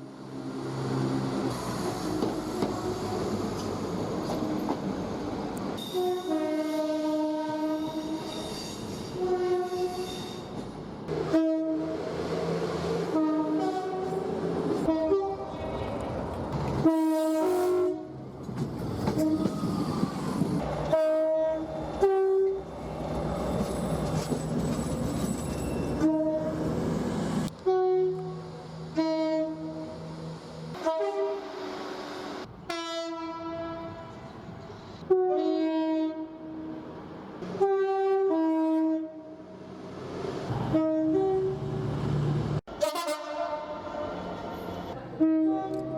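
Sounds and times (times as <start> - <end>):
train running noise: 0.2 - 32.8
two-tone train horn: 5.8 - 8.3, 9.2 - 10.1, 11.2 - 12.0, 13.0 - 14.2, 14.8 - 15.6, 16.8 - 18.2, 19.1 - 19.6, 20.8 - 22.6, 26.0 - 26.6, 27.5 - 30.0, 30.8 - 31.6, 32.7 - 34.4, 35.0 - 36.6, 37.6 - 39.4, 40.7 - 41.7, 42.7 - 45.9.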